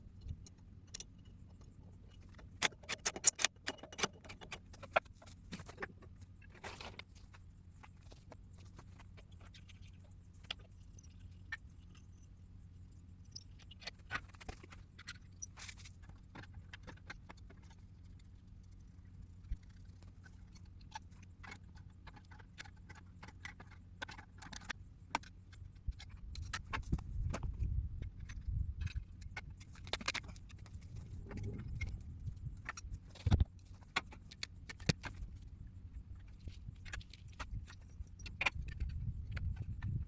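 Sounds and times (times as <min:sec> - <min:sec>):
low hum: 0:04.5 - 0:40.0
low rumble: 0:30.7 - 0:32.8.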